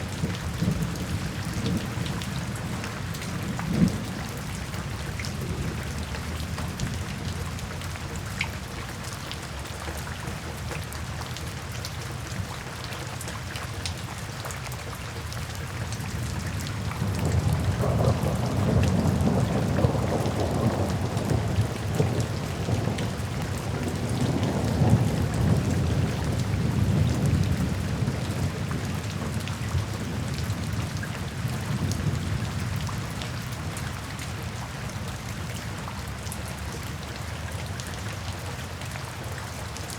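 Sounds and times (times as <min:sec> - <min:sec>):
steady rain falling: 0:00.0 - 0:39.9
rolling thunder rumble: 0:16.2 - 0:33.5.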